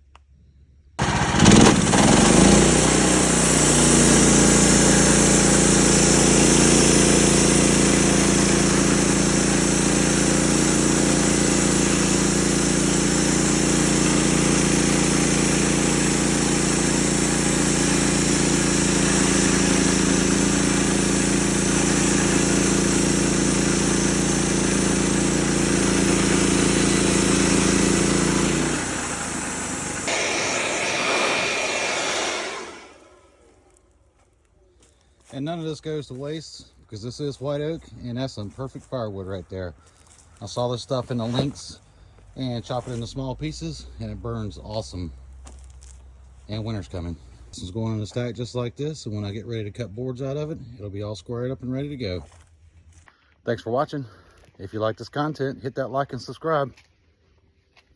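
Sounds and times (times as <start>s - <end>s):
band sawmill sawing wood: 1.0s - 34.3s, 37.0s - 41.8s, 42.4s - 47.8s.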